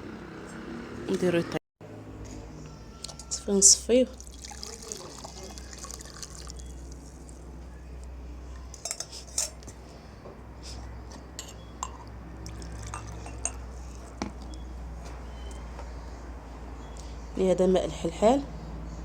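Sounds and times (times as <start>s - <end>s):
liquid pouring: 4.1s - 7.5s, 12.4s - 13.6s
kitchenware clinking: 8.7s - 9.8s, 11.2s - 14.4s.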